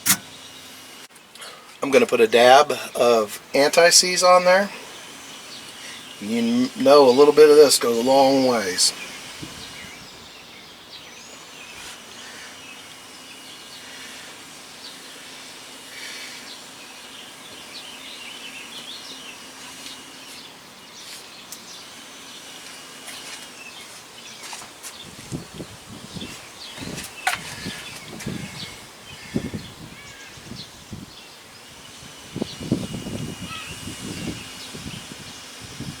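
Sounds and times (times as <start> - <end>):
steady background hiss: 0.0 - 36.0
faint bird chirps: 26.2 - 35.1.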